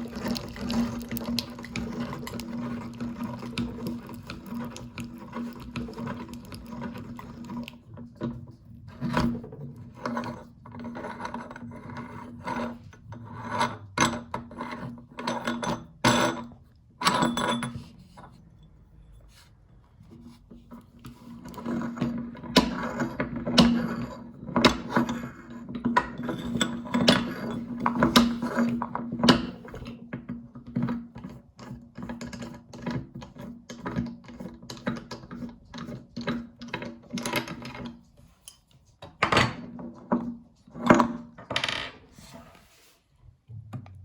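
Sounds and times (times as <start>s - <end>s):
clicks and crackles: 0.0s - 7.8s.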